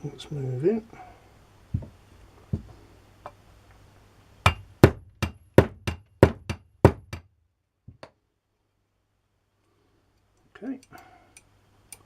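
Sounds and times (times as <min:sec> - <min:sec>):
hammer tapping: 0:04.5 - 0:07.3.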